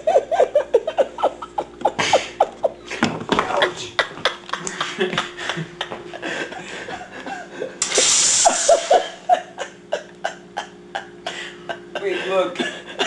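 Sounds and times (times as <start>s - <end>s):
person laughing: 0.0s - 13.0s
steam hissing: 7.8s - 9.1s.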